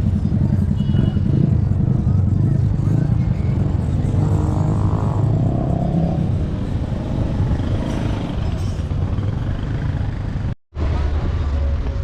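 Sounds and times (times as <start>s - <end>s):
vehicle engines passing: 0.0s - 12.0s.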